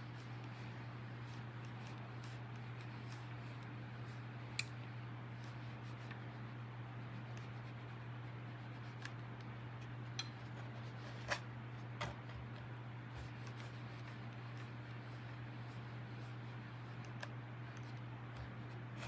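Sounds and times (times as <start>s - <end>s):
steady low hum: 0.0s - 19.0s
light clicks and taps: 4.5s - 6.3s.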